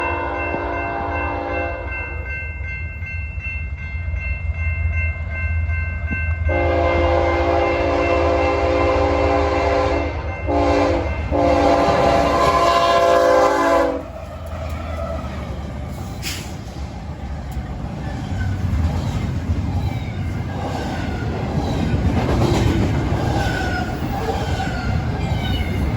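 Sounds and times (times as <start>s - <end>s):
train horn blasts: 0.0s - 2.0s, 6.5s - 14.2s
diesel locomotive rumble: 5.2s - 25.9s.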